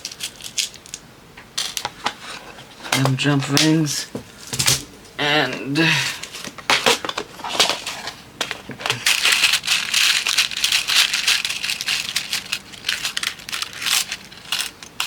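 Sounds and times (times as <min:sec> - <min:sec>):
plastic packaging crinkling: 0:00.0 - 0:01.0, 0:05.9 - 0:15.0.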